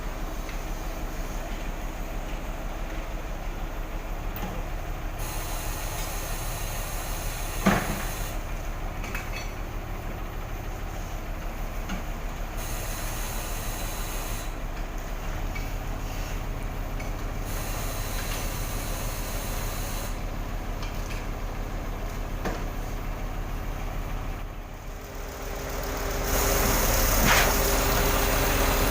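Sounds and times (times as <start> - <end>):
concrete pump truck running: 0.0 - 28.9
hiss: 5.2 - 8.4, 17.5 - 20.2.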